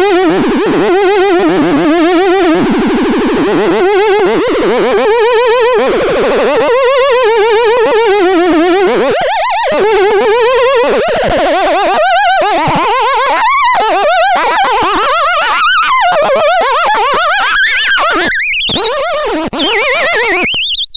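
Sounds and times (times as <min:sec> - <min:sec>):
wobbling warbling electronic tone: 0:06.5 - 0:20.6.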